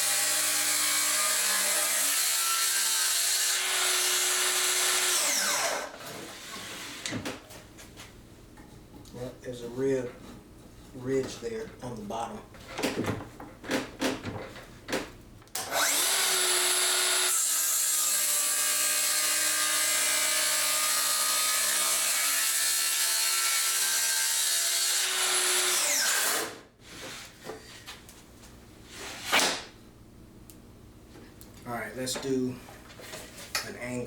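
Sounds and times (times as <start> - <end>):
circular saw cutting wood: 0.0 - 7.1, 15.6 - 26.6.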